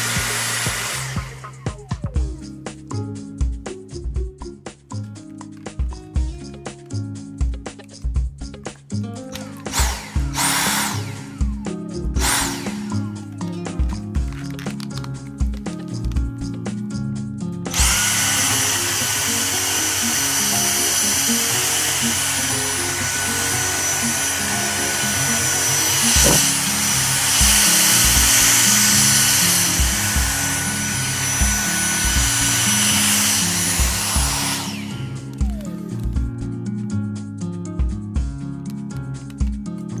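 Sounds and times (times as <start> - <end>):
vacuum cleaner motor whine: 0.0 - 1.7, 9.4 - 13.3, 17.7 - 35.9
background music with bass: 0.0 - 40.0.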